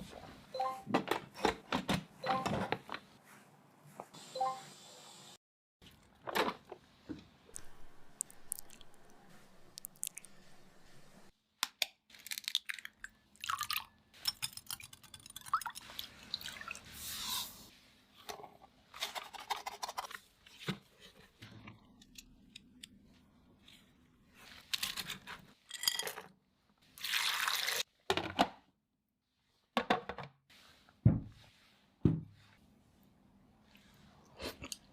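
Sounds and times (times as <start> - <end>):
food crunching: 7.6 - 10.4
liquid pouring and dripping: 7.6 - 10.6.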